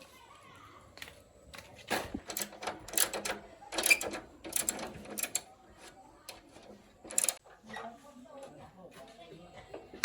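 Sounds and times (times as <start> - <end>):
metal tools clinking and rattling: 2.2 - 5.4, 6.6 - 7.4.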